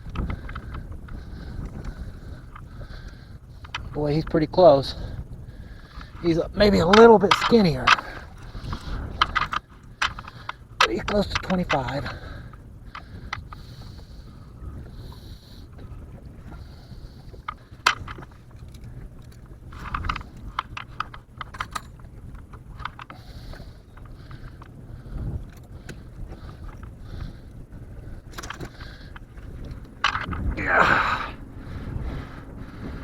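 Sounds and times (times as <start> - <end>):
steady low rumble: 0.0 - 33.0
handling clicks and knocks: 6.0 - 13.6, 17.4 - 27.4, 28.2 - 31.4.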